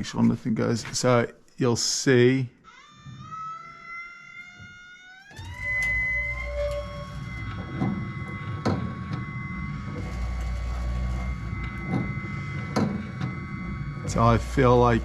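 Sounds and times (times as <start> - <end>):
grinding wheel motor whining: 5.2 - 15.0.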